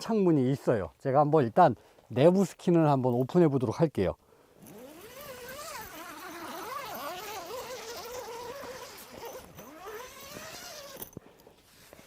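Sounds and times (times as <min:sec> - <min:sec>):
zipper click: 0:04.6 - 0:11.2
tent zipper rasping: 0:04.6 - 0:12.0.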